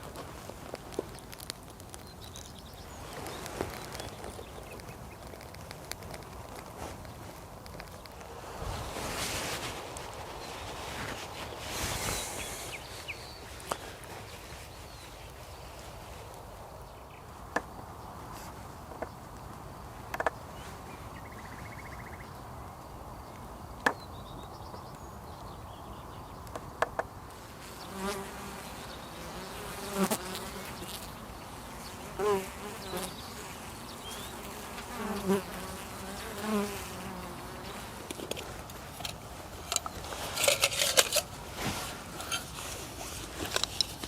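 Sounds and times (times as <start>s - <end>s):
bees buzzing: 27.8s - 38.2s.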